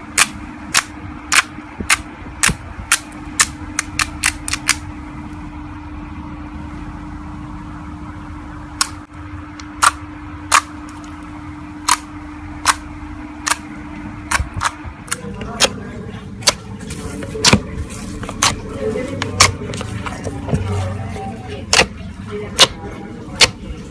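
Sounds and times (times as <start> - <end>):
steady low hum: 0.0 - 23.9.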